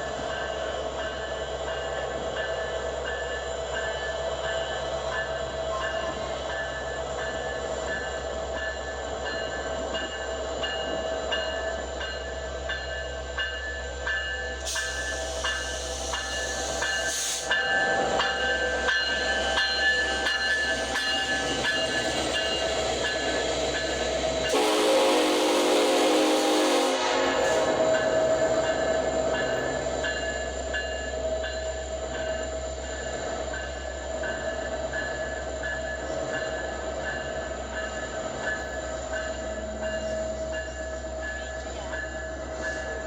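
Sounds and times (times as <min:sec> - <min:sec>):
diesel locomotive engine drone: 0:00.0 - 0:43.0
regular clicking of train wheels: 0:00.0 - 0:43.0
hiss: 0:14.6 - 0:17.6.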